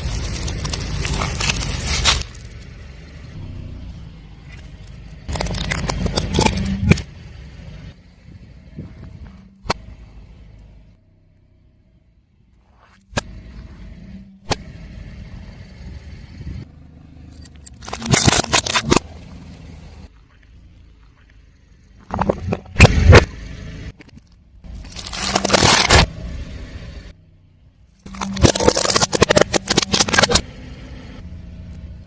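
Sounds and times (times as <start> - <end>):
tyre crushing crunchy objects: 0.0 - 2.6, 5.3 - 7.1, 17.7 - 19.2, 24.7 - 26.1, 28.0 - 30.4
car rumble: 0.0 - 32.0
sharp cracks: 17.5 - 19.1, 24.8 - 26.1, 28.0 - 30.4.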